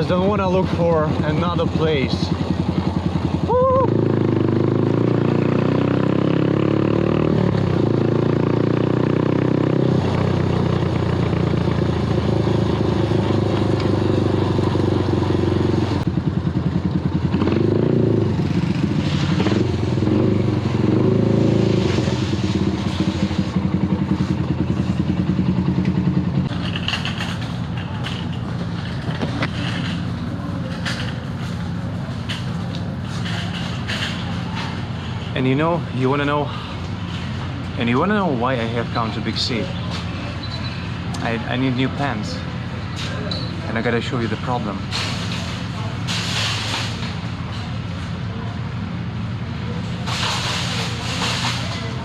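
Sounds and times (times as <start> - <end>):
motorbike engine revving: 0.0 - 36.4.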